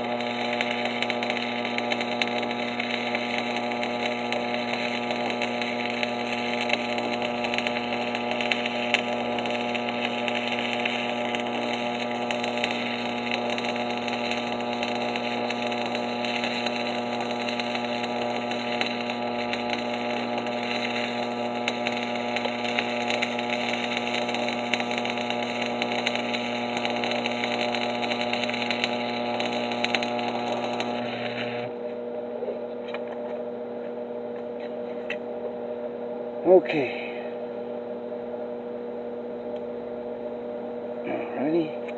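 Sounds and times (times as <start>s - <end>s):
welding arc crackling: 0.0s - 31.8s
welder humming: 0.0s - 41.9s.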